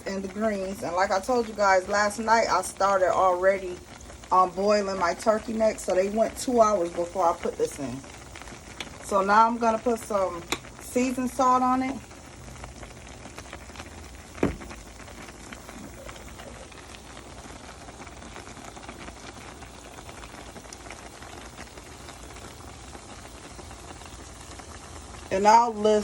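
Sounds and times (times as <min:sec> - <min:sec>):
pot bubbling: 0:00.0 - 0:26.0.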